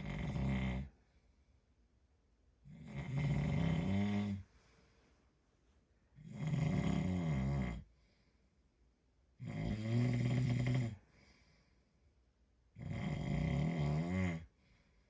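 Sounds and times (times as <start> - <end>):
man snoring: 0.0 - 0.9, 2.7 - 4.4, 6.2 - 7.8, 9.4 - 11.0, 12.8 - 14.5.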